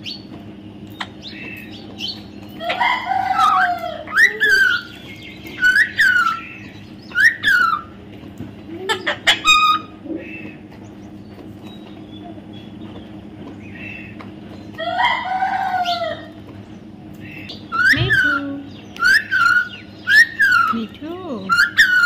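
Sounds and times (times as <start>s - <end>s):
parrot squawking and chirping: 1.2s - 8.0s, 8.9s - 10.5s, 17.2s - 22.0s.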